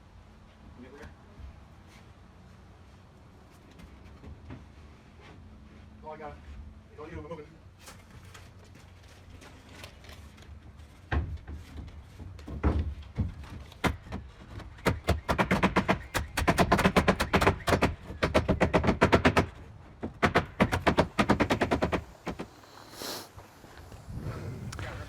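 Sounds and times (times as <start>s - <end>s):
nail gun firing into wood: 13.8s - 22.6s.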